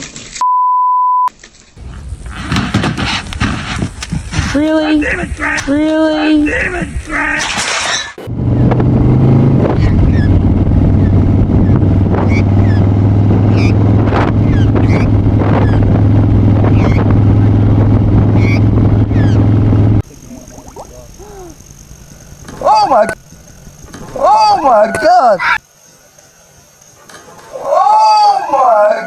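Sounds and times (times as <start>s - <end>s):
engine running steadily: 8.3s - 25.2s.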